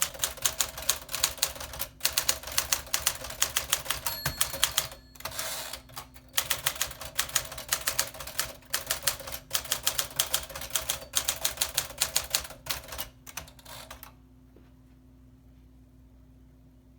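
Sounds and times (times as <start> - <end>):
typewriter key strikes: 3.4 - 8.0.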